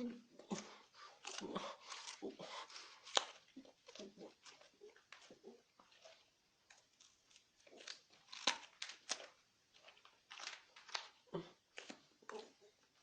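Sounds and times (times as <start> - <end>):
person chewing raw carrot: 0.0 - 13.0.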